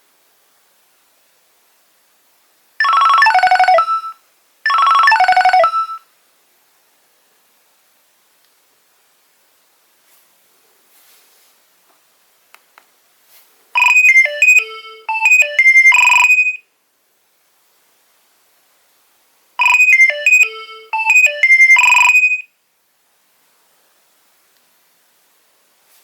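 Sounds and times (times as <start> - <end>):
mobile phone ringtone melody: 2.8 - 6.0, 13.8 - 16.6, 19.6 - 22.5.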